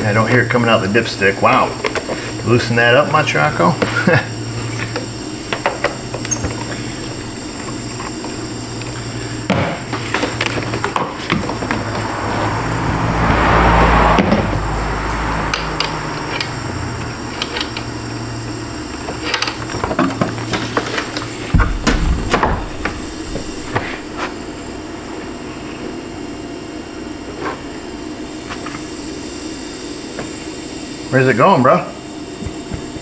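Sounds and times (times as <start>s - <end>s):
compressed air hissing: 0.0s - 26.0s.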